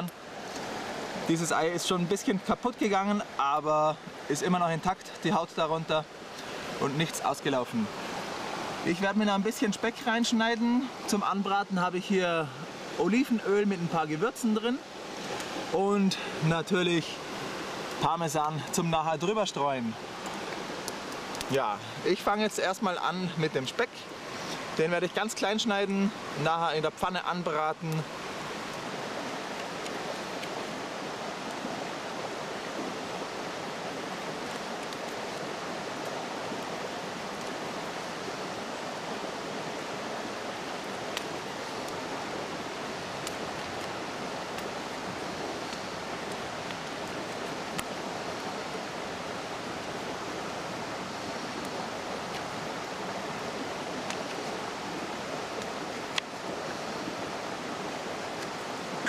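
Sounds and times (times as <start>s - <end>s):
faint sharp clicks: 20.2s - 21.5s, 41.1s - 42.0s, 43.2s - 44.7s, 45.7s - 47.9s, 54.0s - 54.5s.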